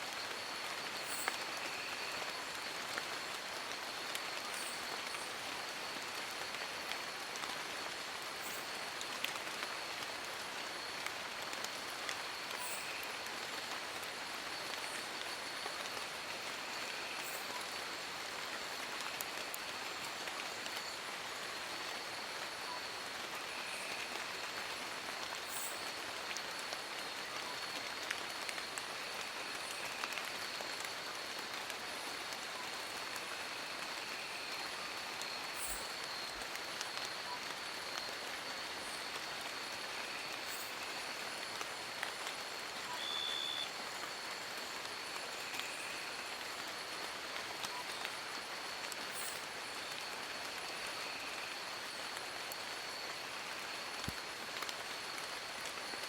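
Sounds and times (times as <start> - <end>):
rain falling on leaves: 0.0 - 56.0.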